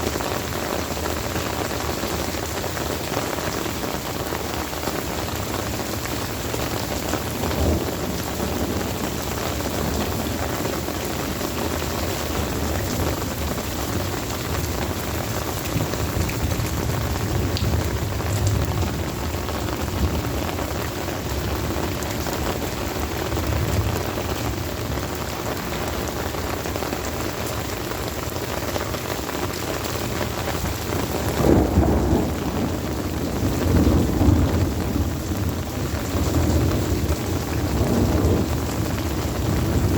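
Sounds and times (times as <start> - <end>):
heavy rain falling: 0.0 - 39.9
thunder rumbling: 5.0 - 26.6, 29.8 - 39.9.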